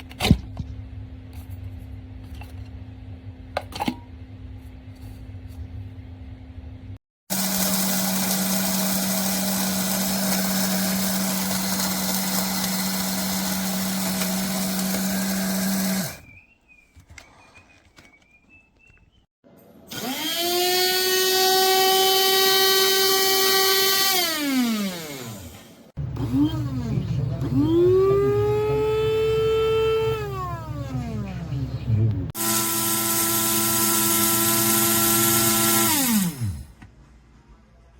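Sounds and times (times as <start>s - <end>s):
electric coffee grinder whining: 7.3s - 16.3s, 19.9s - 31.0s, 32.4s - 36.7s.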